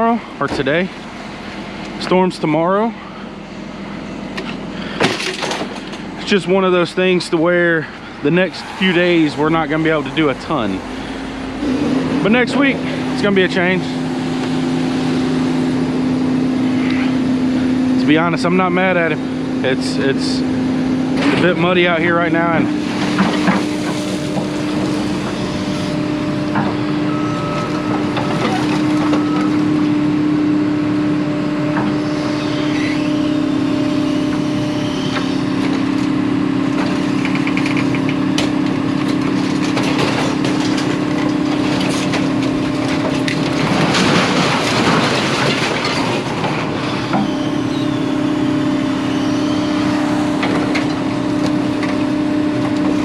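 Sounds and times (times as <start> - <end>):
engine humming steadily: 0.0 - 53.0
knocks and clatter: 4.4 - 6.1, 36.7 - 47.4.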